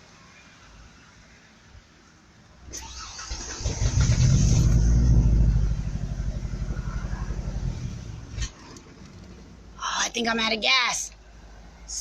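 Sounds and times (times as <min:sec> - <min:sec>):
starter cranking engine: 0:02.7 - 0:06.8
truck engine uneven idle: 0:03.4 - 0:09.7.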